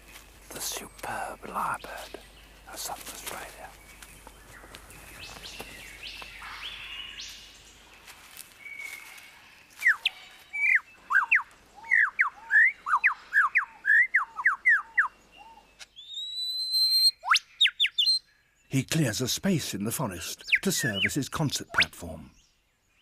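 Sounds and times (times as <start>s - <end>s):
forest bird calls: 0.0s - 23.0s
bird whistling loud notes: 16.0s - 18.2s.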